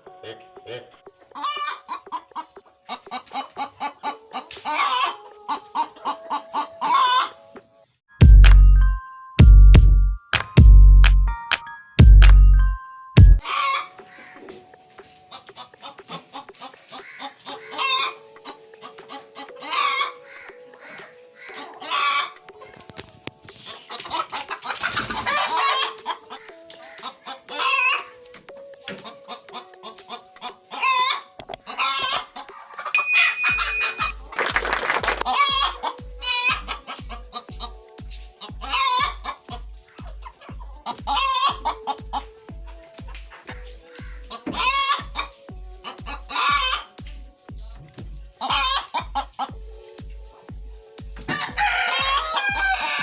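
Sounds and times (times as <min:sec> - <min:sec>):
hen calling loudly: 0:00.2 - 0:07.4, 0:13.4 - 0:14.7, 0:15.3 - 0:22.8, 0:23.7 - 0:28.2, 0:29.0 - 0:34.4, 0:35.2 - 0:37.8, 0:38.4 - 0:47.0, 0:48.4 - 0:49.6, 0:51.2 - 0:53.0
hen clucking: 0:00.2 - 0:07.6, 0:13.4 - 0:47.0, 0:48.4 - 0:49.6, 0:51.2 - 0:53.0.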